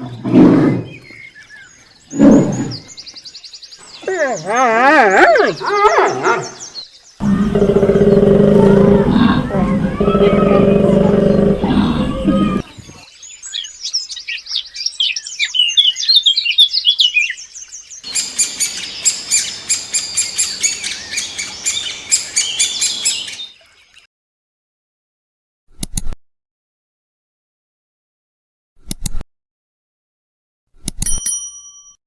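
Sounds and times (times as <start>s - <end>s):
birds chirping and squawking: 0.3s - 23.5s
loud low-pitched sound: 7.2s - 12.6s.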